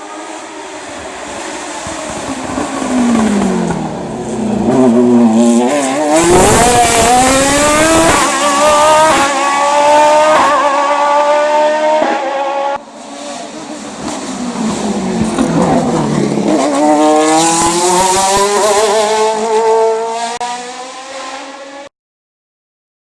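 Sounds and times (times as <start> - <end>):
race car engine accelerating: 0.0 - 21.9
gear upshifts: 13.0 - 19.6.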